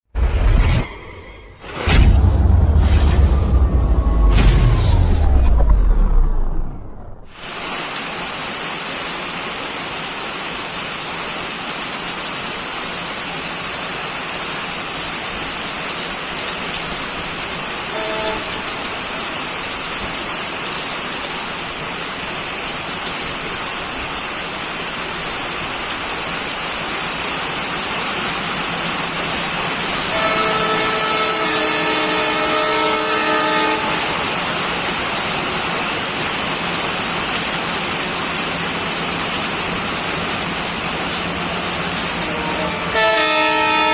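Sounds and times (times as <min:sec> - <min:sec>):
steady rain falling: 0:07.2 - 0:43.9.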